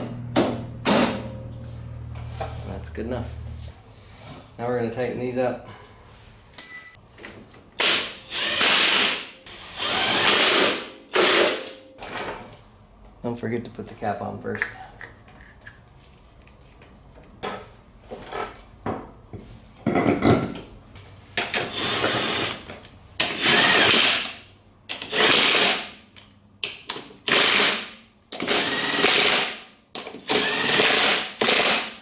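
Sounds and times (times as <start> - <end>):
impact wrench bursts: 7.8 - 11.6, 30.3 - 32.0.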